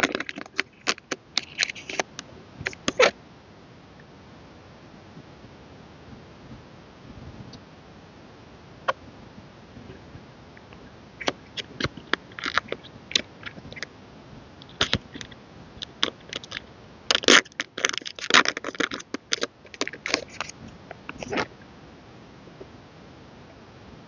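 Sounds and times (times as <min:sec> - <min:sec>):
plastic and paper crinkling: 0:00.0 - 0:03.1, 0:11.2 - 0:13.9, 0:14.6 - 0:21.5.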